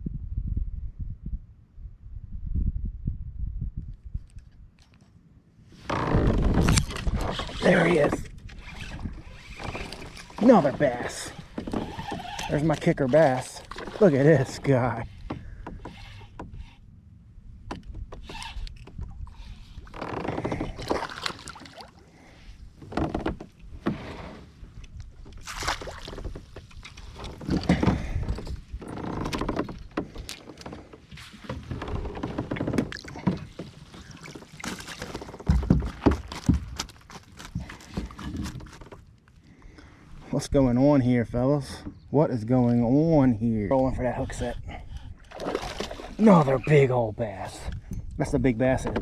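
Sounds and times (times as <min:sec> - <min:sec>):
water sounds: 0:06.4 - 0:16.8, 0:18.2 - 0:38.9, 0:43.5 - 0:49.0.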